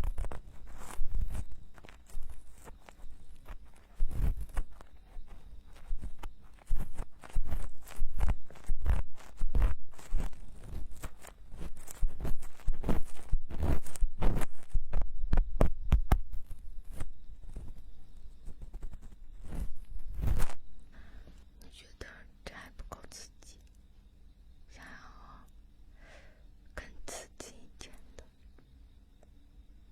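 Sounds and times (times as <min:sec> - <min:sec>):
tools scraping inside microphone ear: 0:00.0 - 0:17.8, 0:18.4 - 0:20.7
muffled thumps: 0:00.0 - 0:21.4.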